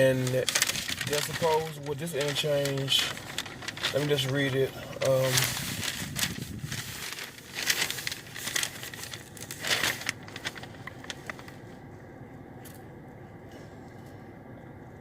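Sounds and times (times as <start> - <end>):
close rustling and crinkling: 0.0 - 11.8
faint steady hum: 0.0 - 15.0.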